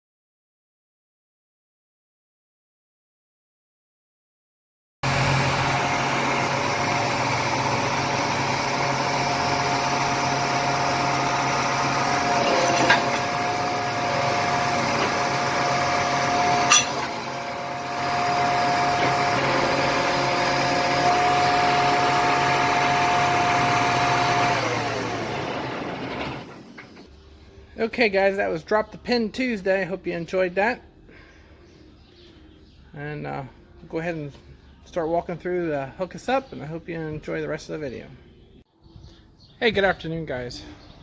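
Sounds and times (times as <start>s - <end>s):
small engine whining: 5.0s - 27.5s.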